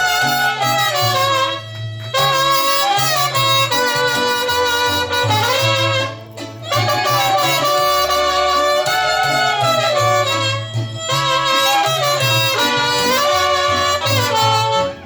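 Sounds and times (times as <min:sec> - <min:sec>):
bass line: 0:00.0 - 0:15.0
horns playing melody: 0:00.0 - 0:15.0
live band playing: 0:00.0 - 0:15.0.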